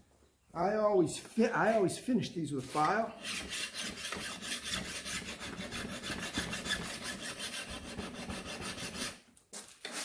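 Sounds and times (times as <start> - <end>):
hand file scraping steel blade: 2.7 - 9.2.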